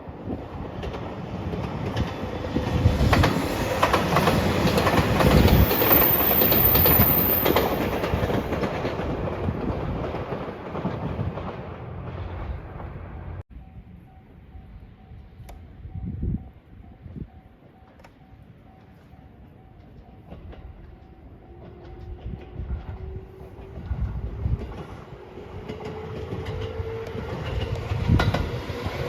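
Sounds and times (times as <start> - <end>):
diesel train passing: 0.0 - 29.0
wheels clacking over rail joints: 0.6 - 13.3.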